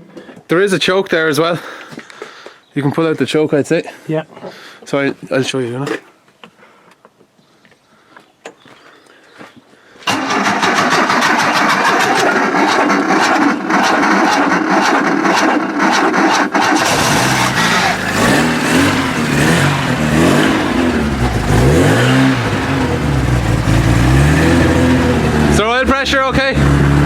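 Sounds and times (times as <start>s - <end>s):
engine cranking on starter: 10.1s - 27.0s
car engine revving: 10.4s - 27.0s.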